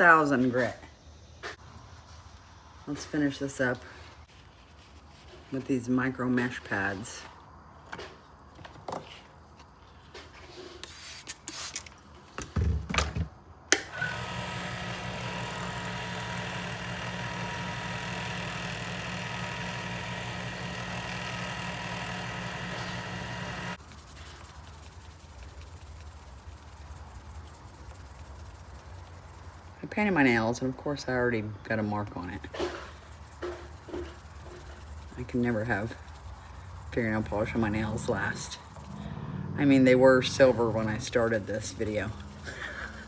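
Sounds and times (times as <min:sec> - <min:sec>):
lathe motor humming: 0:13.9 - 0:23.8, 0:33.4 - 0:39.2, 0:39.8 - 0:43.0
sanding pad rubbing on spinning blank: 0:13.9 - 0:29.8, 0:32.2 - 0:39.1, 0:40.0 - 0:43.0.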